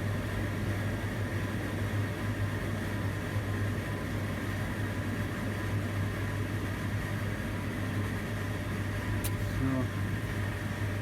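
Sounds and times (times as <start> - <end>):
low machine hum: 8.1 - 11.0.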